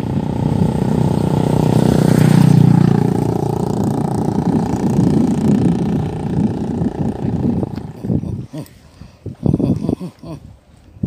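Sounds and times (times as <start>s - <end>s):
motor engine running: 0.0s - 8.3s.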